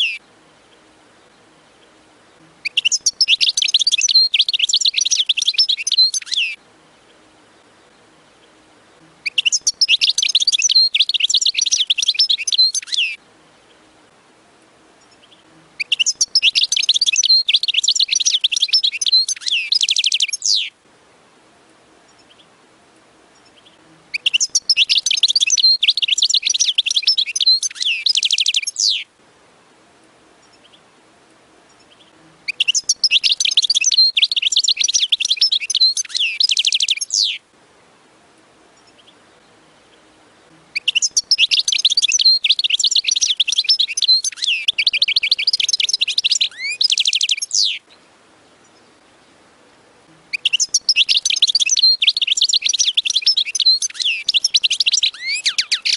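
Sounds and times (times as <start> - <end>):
goldfinch twittering song: 0.0 - 8.6, 9.2 - 13.8, 15.0 - 20.7, 23.3 - 29.1, 31.7 - 37.4, 40.7 - 49.4, 50.3 - 55.9.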